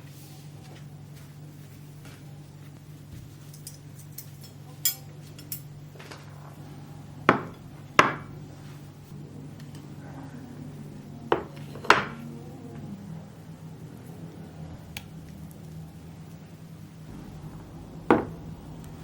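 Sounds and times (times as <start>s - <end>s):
steady low hum: 0.0s - 19.0s
kitchenware clinking and knocking: 18.0s - 18.5s.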